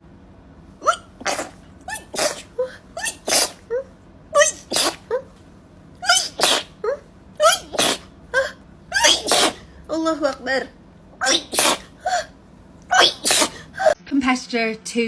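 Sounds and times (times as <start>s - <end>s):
person sneezing: 0.8s - 3.8s, 4.4s - 5.2s, 6.0s - 9.8s, 11.2s - 12.3s, 12.9s - 14.0s.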